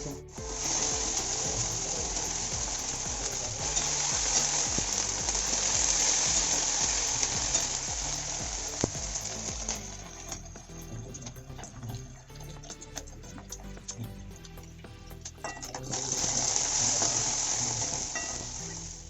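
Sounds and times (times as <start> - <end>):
onion sizzling in hot oil: 0.0 - 10.8.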